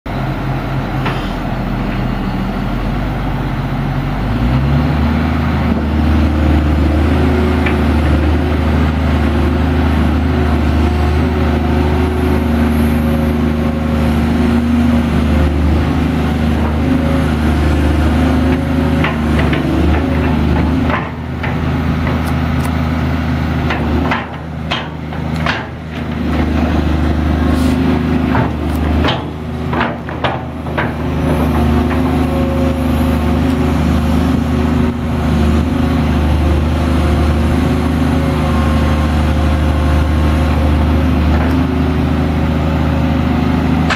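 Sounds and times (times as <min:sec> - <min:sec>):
excavator diesel engine revving: 0:00.1 - 0:43.9
metal knocks and clanks: 0:18.5 - 0:22.3, 0:23.6 - 0:26.8, 0:28.2 - 0:32.3.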